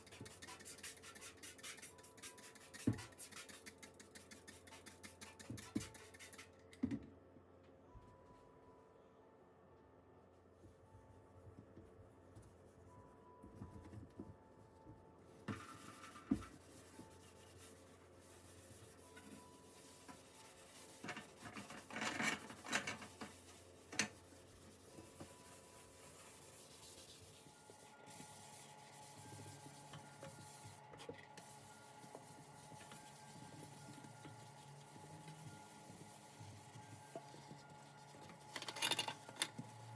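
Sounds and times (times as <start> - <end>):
scratchy strokes: 15.6 - 39.9.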